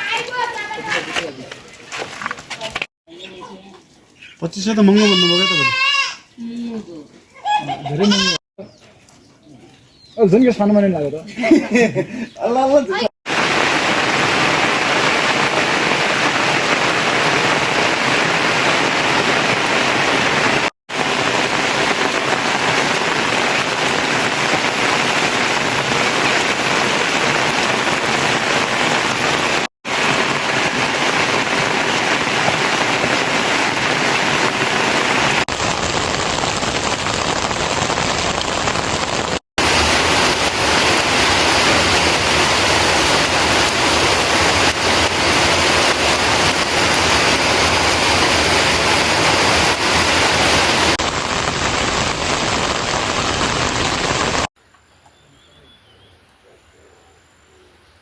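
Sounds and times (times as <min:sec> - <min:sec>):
heavy rain falling: 0:00.0 - 0:03.5, 0:12.7 - 0:54.5.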